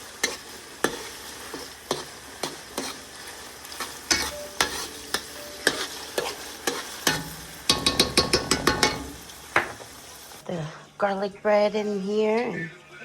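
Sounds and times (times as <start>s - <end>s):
meat sizzling in a pan: 0.0s - 10.4s
utensil scraping a pan: 0.2s - 9.2s.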